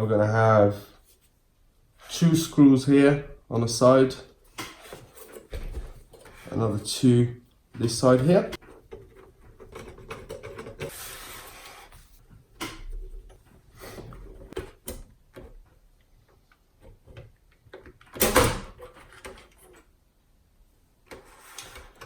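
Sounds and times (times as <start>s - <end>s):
plastic parts clattering: 7.8s - 11.0s.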